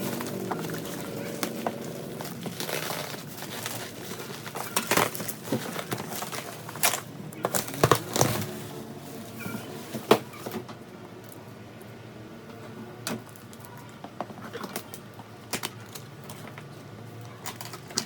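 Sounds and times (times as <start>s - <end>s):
plastic and cardboard being handled: 0.0s - 10.6s.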